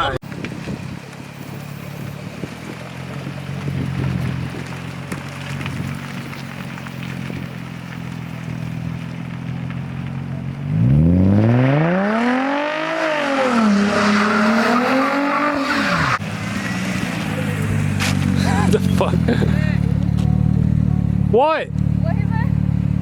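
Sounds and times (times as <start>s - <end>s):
wheels spinning on snow: 0.3s - 20.8s
car engine revving: 1.8s - 23.0s.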